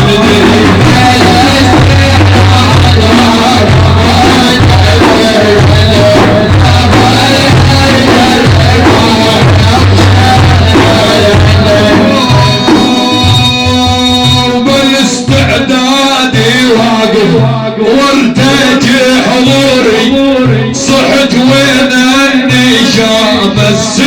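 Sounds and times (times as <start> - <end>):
melodic instrumental line: 0.0 - 15.2
low drum beat: 0.0 - 24.0.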